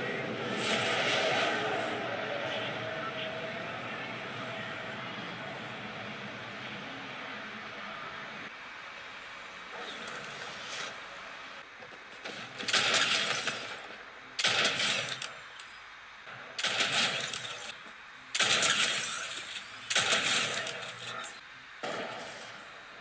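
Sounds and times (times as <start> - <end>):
loud crashing bursts: 0.0 - 2.8.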